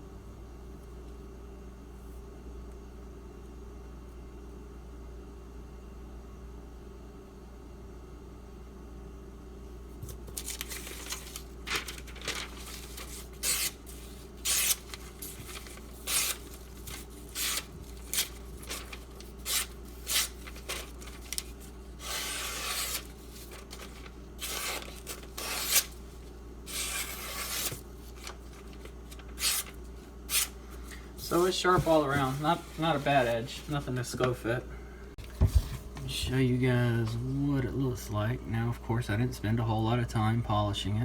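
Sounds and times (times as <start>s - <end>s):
knife slicing paper: 10.4s - 26.1s, 26.7s - 30.6s.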